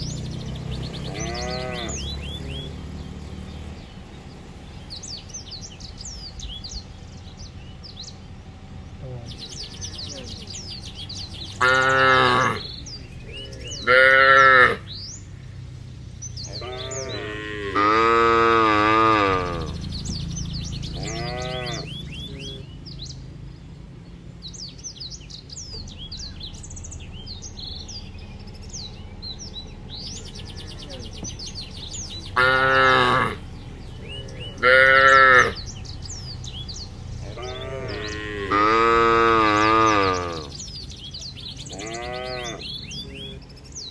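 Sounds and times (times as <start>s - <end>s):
small birds chirping: 0.0s - 43.9s
cattle mooing: 1.0s - 2.3s, 11.5s - 14.9s, 16.5s - 19.8s, 20.9s - 22.6s, 32.1s - 35.8s, 37.2s - 40.6s, 41.6s - 43.4s.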